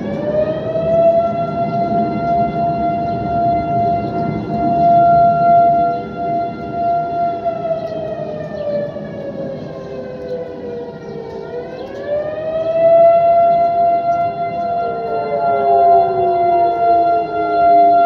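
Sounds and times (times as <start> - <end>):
warning sirens steady tone: 0.0 - 18.0.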